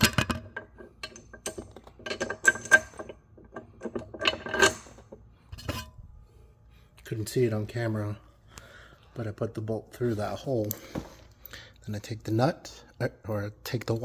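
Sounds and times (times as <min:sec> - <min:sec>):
metal bolt clinking and tapping: 0:00.0 - 0:05.9.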